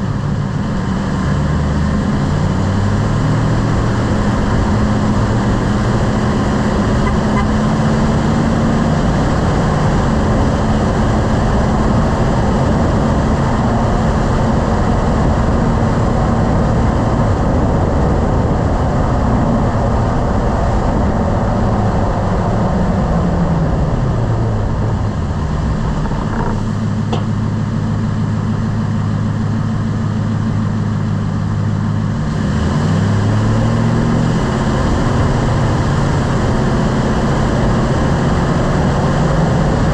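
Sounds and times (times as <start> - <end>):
truck engine and road noise: 0.0 - 39.9
short sharp knock: 26.2 - 27.4.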